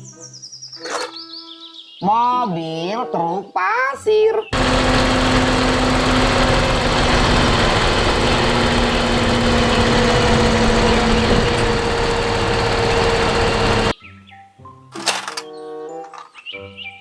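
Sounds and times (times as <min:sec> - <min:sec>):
engine droning: 0:04.6 - 0:13.9.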